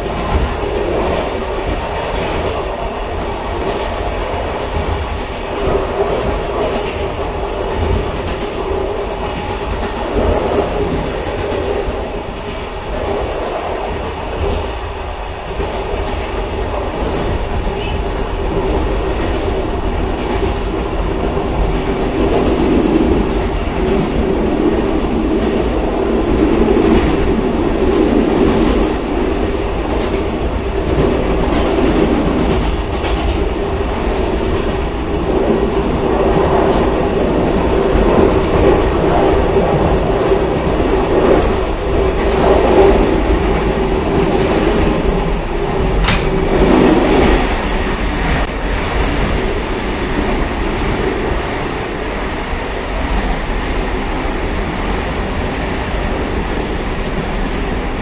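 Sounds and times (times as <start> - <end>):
wheels rumbling on rail: 0.0 - 58.0
clicks at rail joints: 46.0 - 47.0.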